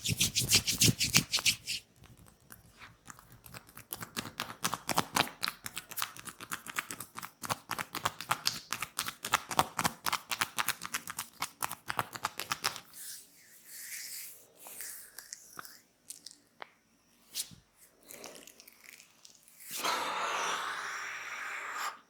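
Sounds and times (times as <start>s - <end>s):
hands rubbing skin: 0.0s - 15.8s.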